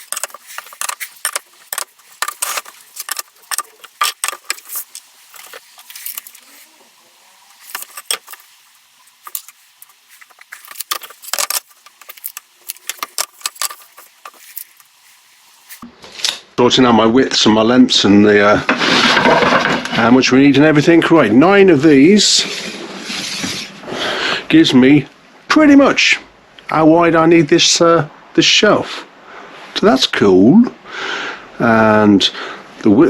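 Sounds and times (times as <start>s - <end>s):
staples pried out of wood: 0.0s - 6.5s, 7.6s - 14.8s.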